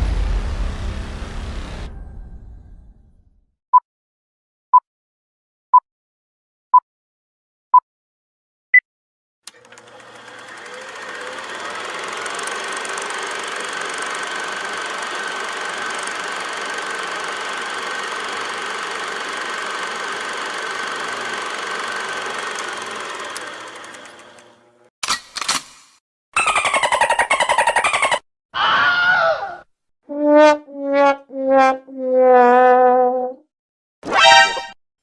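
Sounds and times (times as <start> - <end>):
mechanical engine-like whine: 0.0 - 3.3, 9.5 - 24.9.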